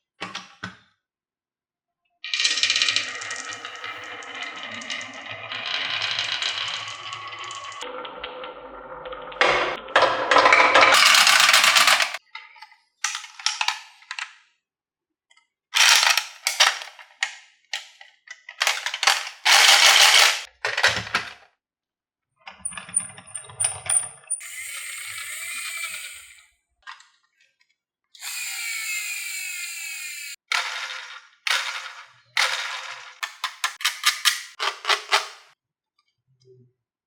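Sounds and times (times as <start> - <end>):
marbles rattling down wooden run: 2.3 - 7.8, 9.5 - 12.2, 15.8 - 16.9, 18.6 - 20.5, 30.5 - 35.5.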